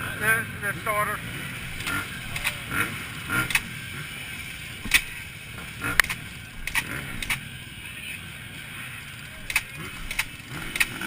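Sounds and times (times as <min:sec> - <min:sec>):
motorcycle mechanical clicks and creaks: 0:01.7 - 0:03.8, 0:04.8 - 0:07.6, 0:09.4 - 0:11.0.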